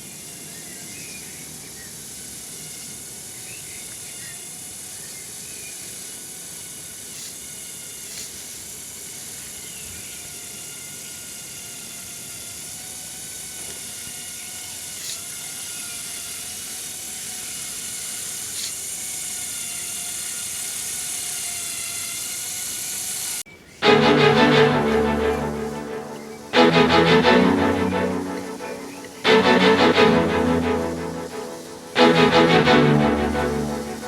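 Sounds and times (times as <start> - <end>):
small electric motors whining: 2.2 - 23.4.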